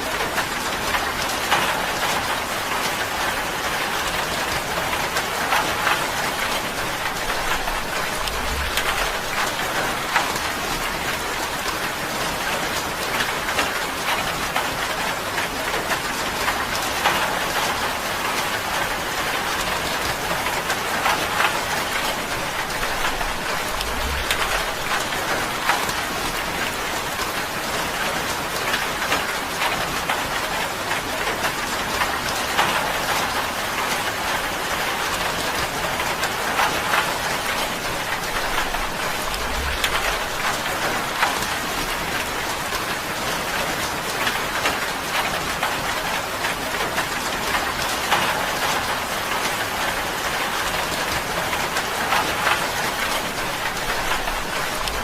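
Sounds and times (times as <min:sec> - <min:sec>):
rain drumming on a tin roof: 0:00.0 - 0:55.0.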